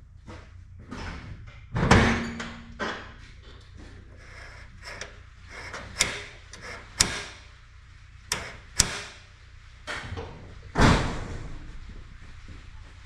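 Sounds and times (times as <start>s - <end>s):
small clicks: 8.3s - 9.0s.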